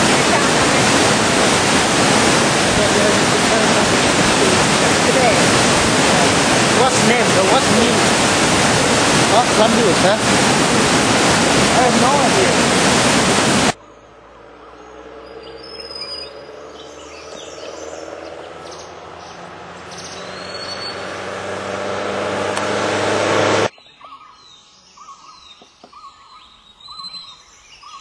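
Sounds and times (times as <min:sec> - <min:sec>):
steady rushing noise with low hum: 0:00.0 - 0:13.8
small birds chirping: 0:13.8 - 0:21.1, 0:23.7 - 0:28.0
high bird chirps: 0:14.8 - 0:21.1.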